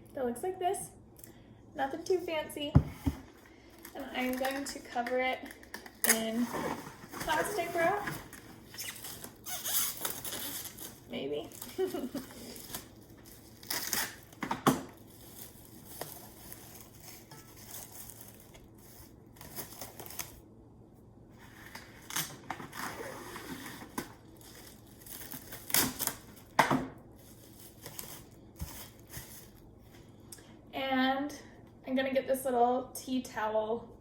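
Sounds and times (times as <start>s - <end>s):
cling wrap crinkling and tearing: 3.8s - 20.4s, 21.9s - 26.6s.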